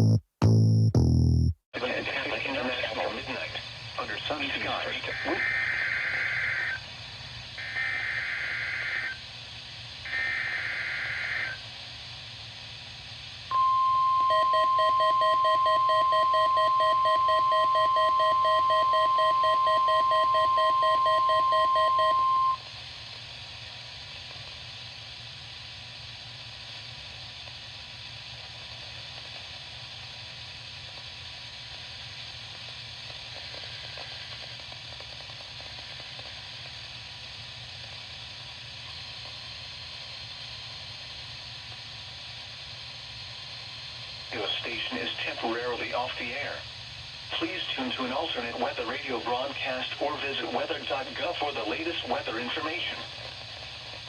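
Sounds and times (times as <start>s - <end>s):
static hiss: 1.8s - 13.6s, 22.7s - 54.0s
fast pulsing beep: 13.5s - 22.6s.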